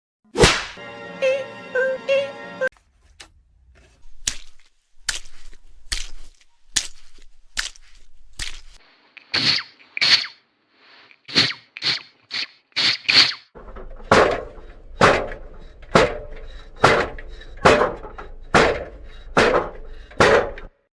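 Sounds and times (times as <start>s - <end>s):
sharp whacks: 0.3s - 0.8s, 9.3s - 10.4s, 11.3s - 13.5s
heavy thunks: 13.6s - 20.8s.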